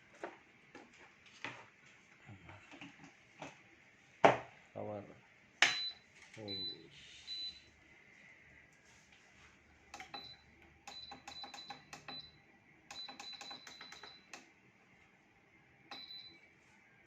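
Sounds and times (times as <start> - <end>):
button presses with high beeps: 12.9 - 14.3.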